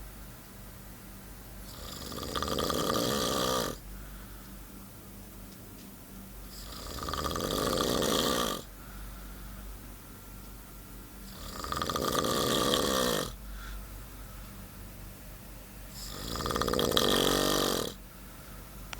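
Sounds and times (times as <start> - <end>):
person snoring: 1.6 - 3.8, 6.5 - 8.7, 11.2 - 13.4, 15.9 - 18.0.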